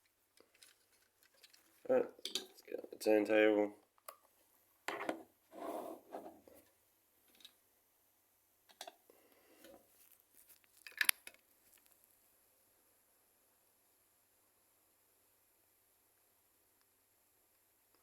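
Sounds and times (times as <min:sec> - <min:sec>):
rustling: 0:09.8 - 0:12.2.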